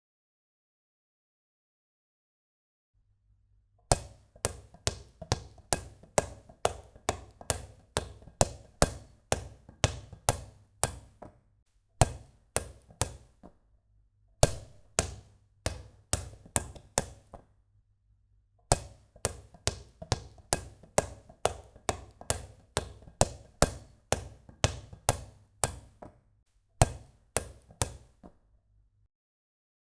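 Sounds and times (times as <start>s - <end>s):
ball bouncing: 3.9s - 11.4s, 12.0s - 13.6s, 14.4s - 17.5s, 18.7s - 26.2s, 26.8s - 28.4s.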